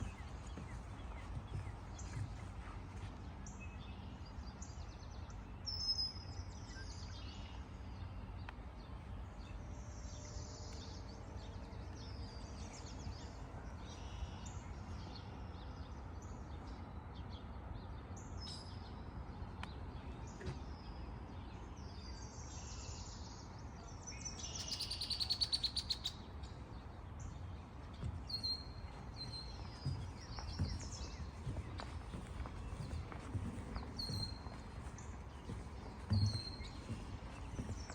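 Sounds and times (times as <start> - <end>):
birds chirping: 0.0 - 18.9, 24.2 - 37.9
low background rumble: 26.1 - 37.9.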